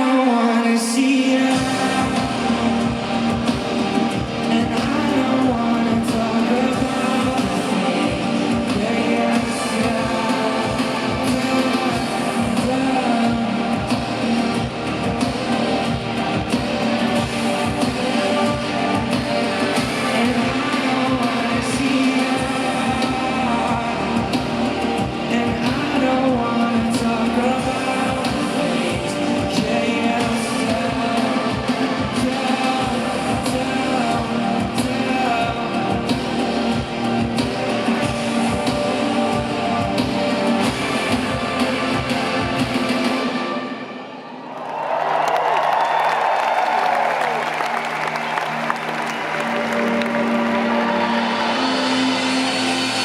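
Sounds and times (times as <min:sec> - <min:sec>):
guitar: 0:00.0 - 0:44.2, 0:45.9 - 0:53.0
live band music: 0:01.2 - 0:44.3, 0:46.0 - 0:53.0
drum beat: 0:01.5 - 0:43.3.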